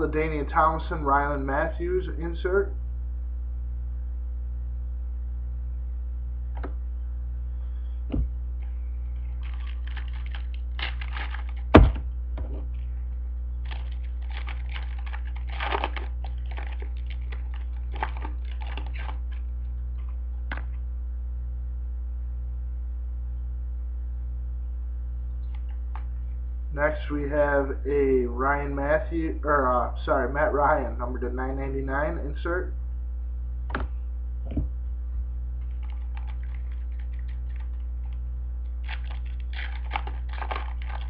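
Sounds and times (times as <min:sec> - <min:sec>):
low electrical hum: 0:00.0 - 0:41.0
cards rustling and clicking: 0:09.2 - 0:12.6, 0:13.6 - 0:19.4, 0:35.6 - 0:38.2, 0:38.8 - 0:41.0.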